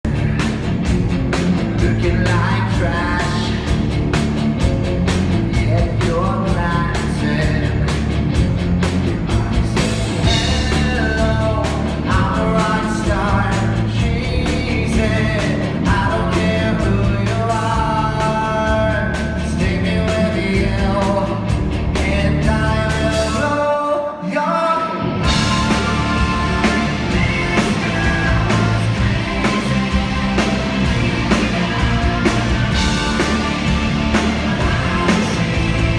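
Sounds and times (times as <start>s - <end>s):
rock band playing: 0.0s - 23.5s, 25.0s - 35.9s
person singing: 22.0s - 35.9s.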